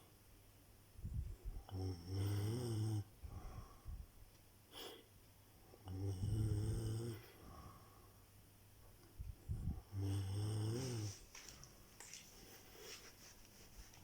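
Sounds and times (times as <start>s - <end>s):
buzzing snore: 1.7s - 3.1s, 5.9s - 7.2s, 9.9s - 11.2s
soft short breaths: 7.2s - 8.3s, 10.8s - 14.0s.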